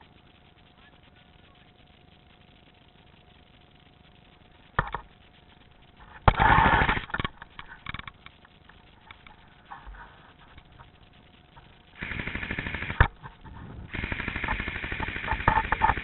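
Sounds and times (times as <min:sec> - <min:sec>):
scattered clicks: 0:00.0 - 0:16.0
airsoft gun automatic bursts: 0:06.2 - 0:07.4, 0:11.9 - 0:16.0.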